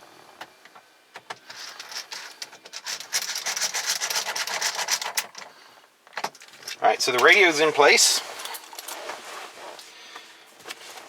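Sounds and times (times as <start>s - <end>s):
metal and plastic parts scraping: 1.2s - 9.8s.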